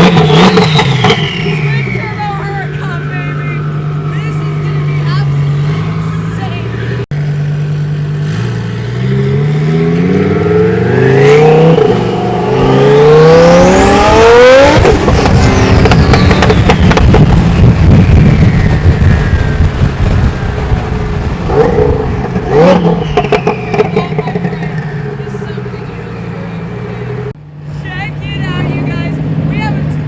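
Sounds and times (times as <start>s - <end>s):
falling whistle: 0.0s - 2.6s, 22.6s - 24.0s
car engine at full throttle: 0.0s - 30.0s
engine revving: 0.0s - 30.0s
exhaust crackling and popping: 0.0s - 30.0s.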